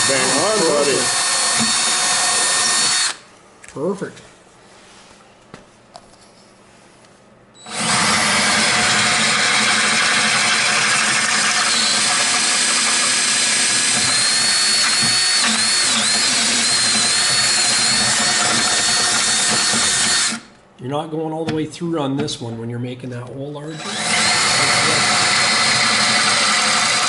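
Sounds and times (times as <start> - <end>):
power drill running: 0.0 - 3.2, 7.6 - 20.5, 23.7 - 27.0.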